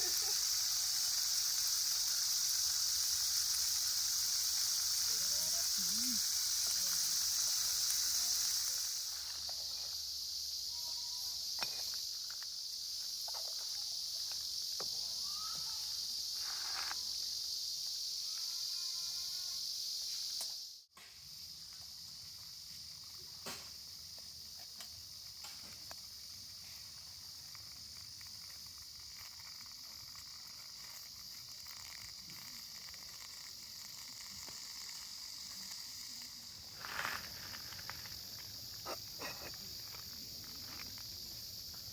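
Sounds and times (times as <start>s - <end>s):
high-pitched insect chorus: 0.0s - 41.9s.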